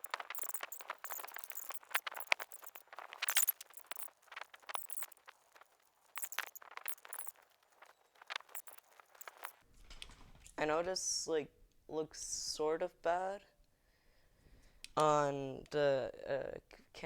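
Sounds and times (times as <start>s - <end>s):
screwdriver clicking and scraping: 0.0s - 7.4s, 8.2s - 9.6s.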